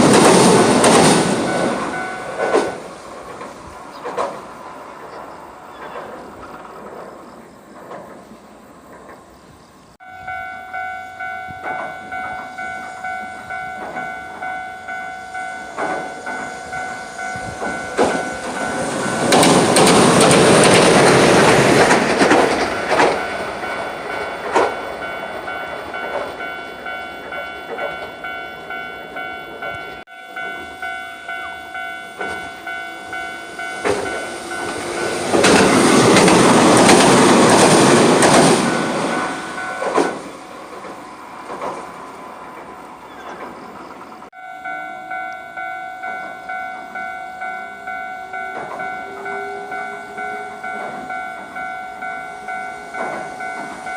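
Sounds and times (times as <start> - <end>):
train wheels on rails: 0.0 - 53.9
level crossing bell ringing: 10.0 - 19.9, 22.5 - 35.9, 38.6 - 40.0, 44.3 - 53.9.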